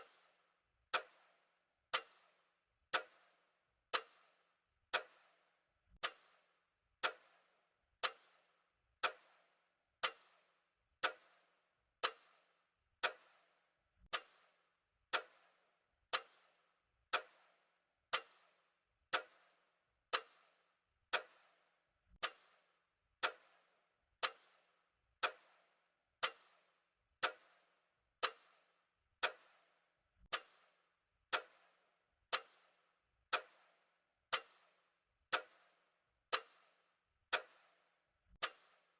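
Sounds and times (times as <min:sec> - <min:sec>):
clock ticking: 0:38.3 - 0:38.7.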